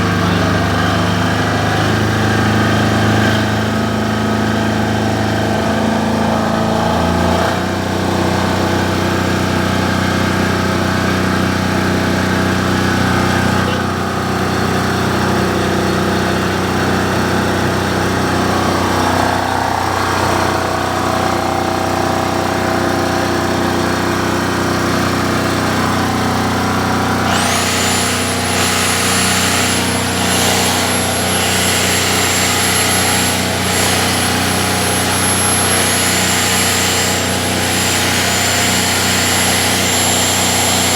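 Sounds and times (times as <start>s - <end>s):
diesel generator engine running: 0.0s - 40.9s
high-pitched whine: 25.6s - 40.9s.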